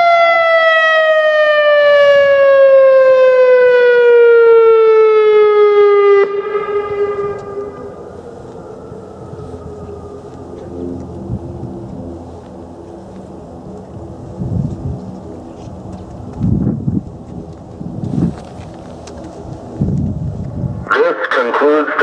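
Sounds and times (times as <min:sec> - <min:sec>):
civil defence siren tone: 0:00.0 - 0:22.0
low wind noise: 0:00.0 - 0:22.0.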